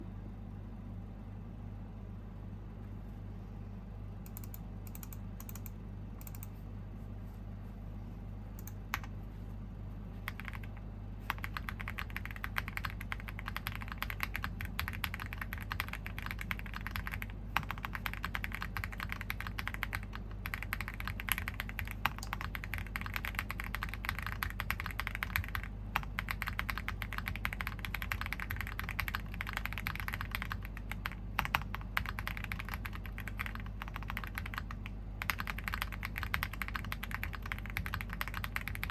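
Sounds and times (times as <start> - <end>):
mechanical keyboard typing: 4.3 - 6.5, 10.3 - 38.9.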